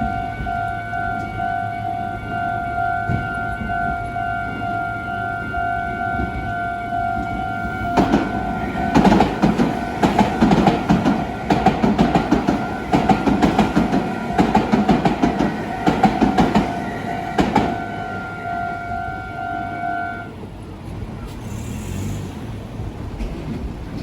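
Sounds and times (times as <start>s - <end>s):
crossing warning bell clanging: 0.0s - 20.5s
train wheels clacking on rails: 7.2s - 18.7s, 20.8s - 24.0s.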